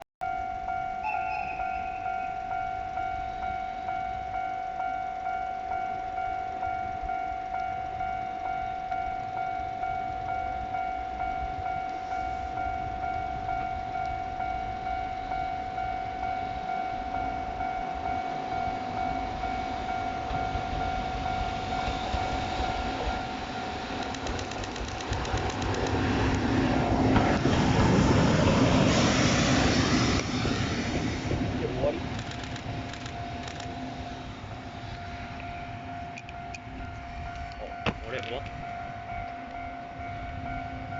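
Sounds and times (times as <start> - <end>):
level crossing warning bell: 0.2 - 24.9, 32.9 - 40.9
electric locomotive passing: 0.2 - 40.9
train wheels clicking on rails: 19.3 - 33.9.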